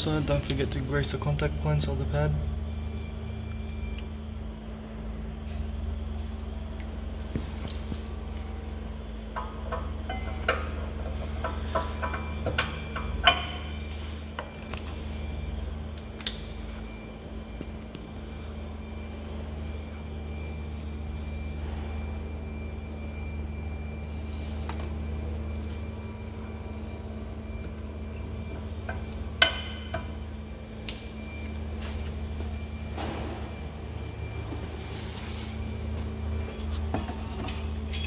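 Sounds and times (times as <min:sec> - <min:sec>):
steady low hum: 0:00.0 - 0:38.0
metallic clinks of tools: 0:37.4 - 0:38.0.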